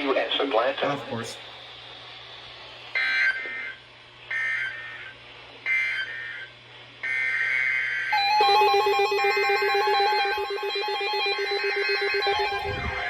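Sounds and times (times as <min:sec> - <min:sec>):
harsh digital data squawks: 0:03.0 - 0:13.0
electronic alert tone: 0:08.2 - 0:13.0.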